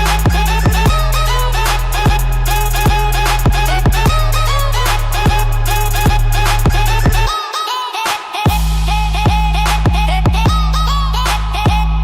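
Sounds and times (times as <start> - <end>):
deep bass: 0.0 - 7.3, 8.5 - 12.0
quick high ticking strokes: 0.0 - 7.3.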